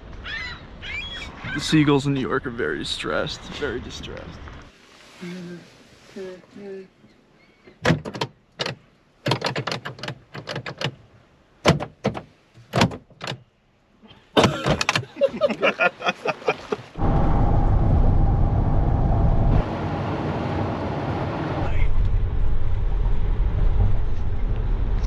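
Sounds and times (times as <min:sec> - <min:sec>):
gulls calling: 0:00.2 - 0:01.8
loud rushing noise: 0:17.0 - 0:24.3.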